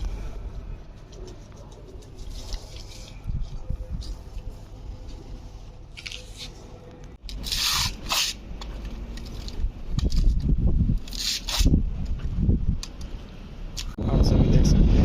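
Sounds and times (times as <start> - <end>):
wind buffeting microphone: 9.5 - 13.2, 13.9 - 15.0.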